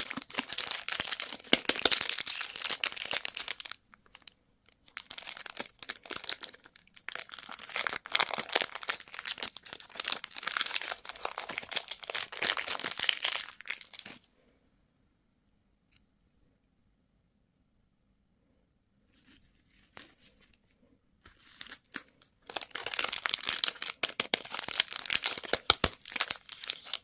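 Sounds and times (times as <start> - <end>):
candy wrapper crinkling: 0.0 - 14.3, 21.3 - 27.0.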